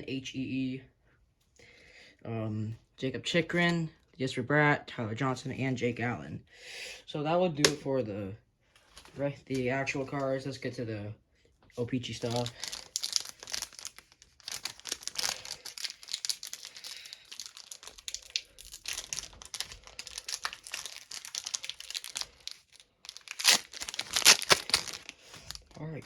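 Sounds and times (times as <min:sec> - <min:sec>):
card pack wrapper crinkling and tearing: 0:12.1 - 0:26.0.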